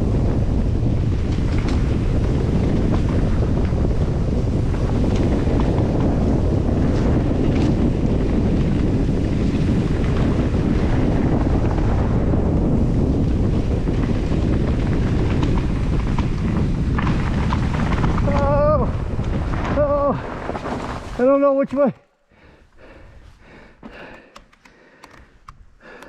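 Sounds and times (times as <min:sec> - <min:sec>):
wind rumbling over microphone: 0:00.0 - 0:21.6
faint clicks: 0:24.0 - 0:26.0.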